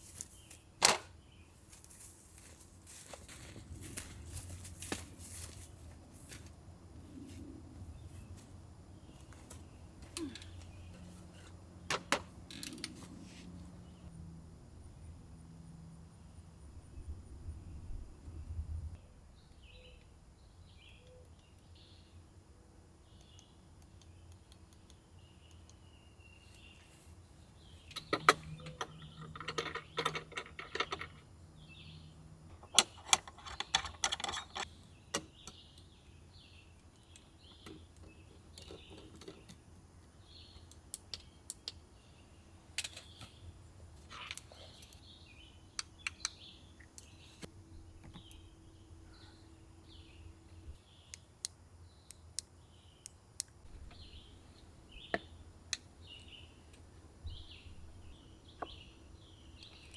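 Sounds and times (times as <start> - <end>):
birds chirping: 7.1 - 14.2, 25.2 - 39.6, 40.2 - 59.9
clattering handling noise: 27.9 - 31.3, 32.6 - 34.7.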